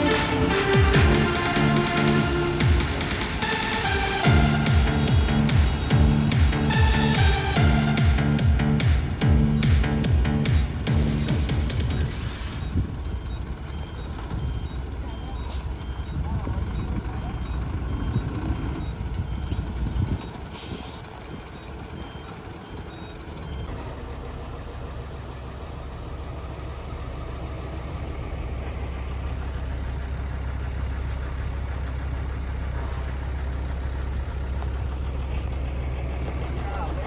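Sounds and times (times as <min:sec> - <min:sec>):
diesel truck engine running: 0:00.0 - 0:37.0
reversing beeper: 0:00.0 - 0:37.0
air brake hiss: 0:20.6 - 0:21.0.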